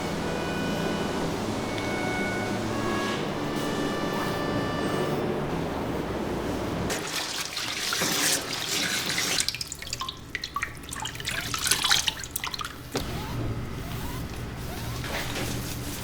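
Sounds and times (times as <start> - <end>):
water splashing and dripping: 6.9 - 12.9.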